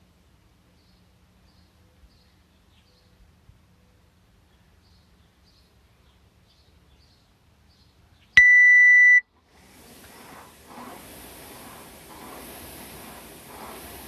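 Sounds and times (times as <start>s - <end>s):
high electronic beep: 8.4s - 9.2s
rushing hissing noise: 9.5s - 14.0s.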